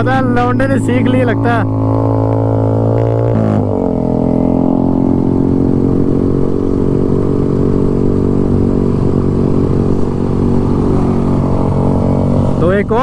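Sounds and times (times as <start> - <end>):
motorcycle engine at high revs: 0.0 - 13.0.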